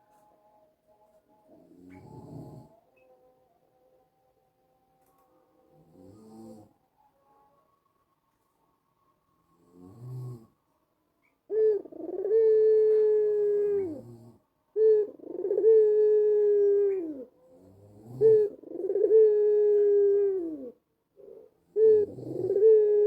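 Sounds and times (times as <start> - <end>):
dove cooing: 1.5 - 2.8, 11.5 - 23.0.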